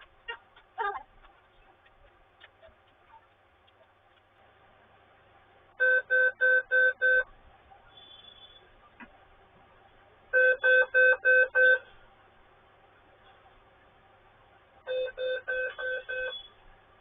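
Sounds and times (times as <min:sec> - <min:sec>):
short computer beeps: 0:05.8 - 0:07.3, 0:10.4 - 0:11.9, 0:14.9 - 0:16.6.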